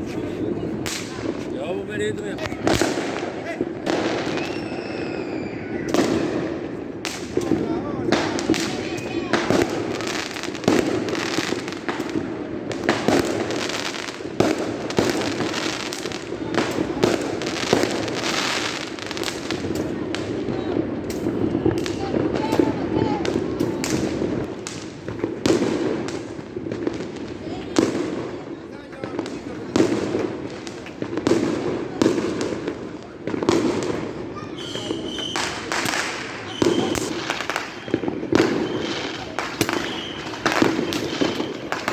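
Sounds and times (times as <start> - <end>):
fireworks crackling and rumbling: 0.0 - 41.9
firework whistle: 3.9 - 7.4, 34.3 - 41.9.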